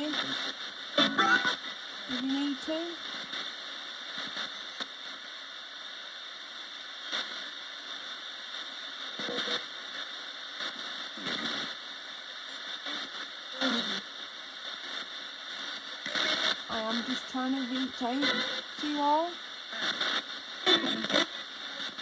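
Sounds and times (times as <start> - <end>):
radio static hiss: 0.0 - 22.0
voice-like radio snatches: 1.0 - 1.6, 9.2 - 9.7, 10.7 - 11.8, 12.8 - 14.1, 16.0 - 22.0.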